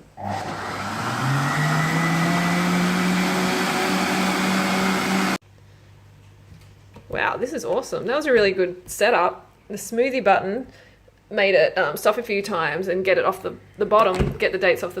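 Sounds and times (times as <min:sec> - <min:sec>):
blender motor running: 0:00.2 - 0:05.4.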